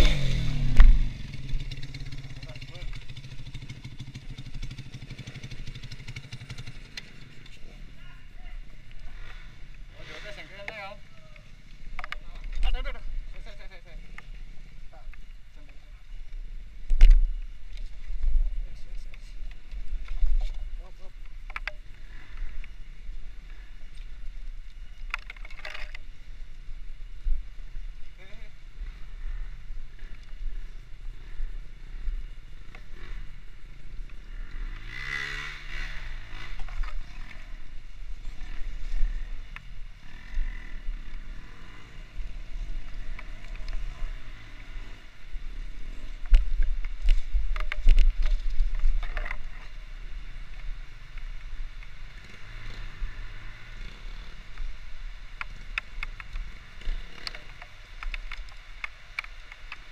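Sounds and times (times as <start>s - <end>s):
vehicle engine running: 0.0s - 7.6s
wind and road noise: 0.0s - 59.9s.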